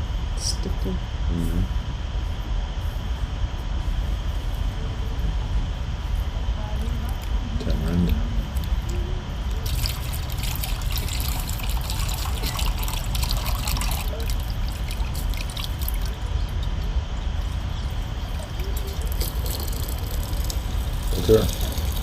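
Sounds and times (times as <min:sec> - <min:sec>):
water trickling and splashing: 0:09.6 - 0:22.0.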